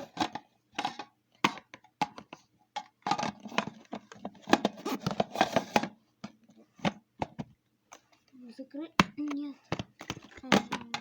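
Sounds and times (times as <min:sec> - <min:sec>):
plastic parts clicking and rattling: 0:09.2 - 0:11.0.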